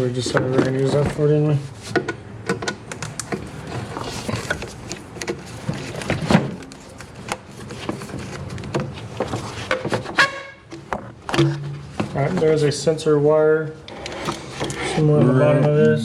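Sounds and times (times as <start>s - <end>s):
plastic and metal rustling: 0.0s - 12.7s
tools clicking and knocking: 1.9s - 3.5s.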